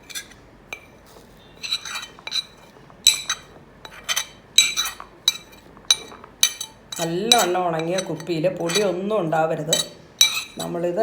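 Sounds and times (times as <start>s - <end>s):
spoon clinking against bottle: 1.6s - 9.0s, 9.7s - 10.8s.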